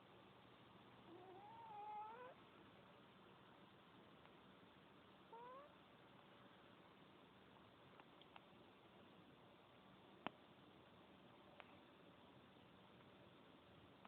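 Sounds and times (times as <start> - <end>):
faint hiss: 0.0 - 14.0
cat meowing softly: 1.1 - 2.4, 5.3 - 5.8.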